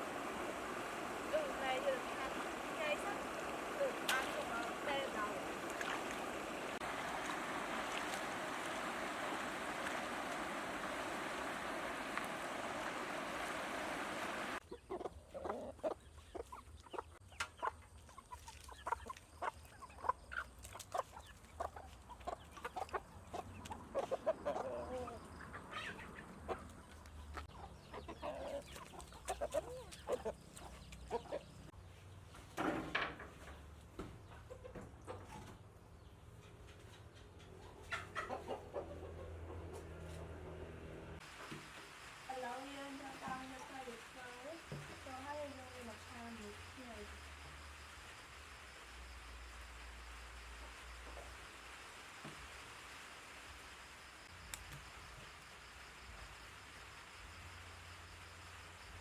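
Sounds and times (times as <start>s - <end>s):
chickens clucking: 0.0s - 6.8s, 7.6s - 31.7s, 34.2s - 40.4s.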